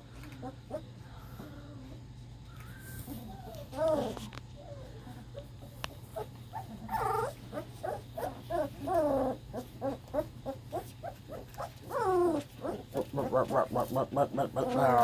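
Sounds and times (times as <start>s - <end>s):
puppies yelping and whimpering: 6.0s - 15.0s.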